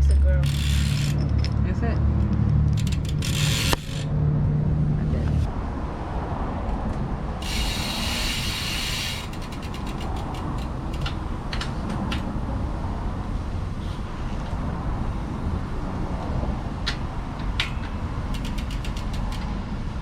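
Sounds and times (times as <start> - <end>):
freewheel hub ratcheting clicks: 0.0 - 1.6, 2.5 - 4.1, 7.4 - 12.3, 16.8 - 19.7.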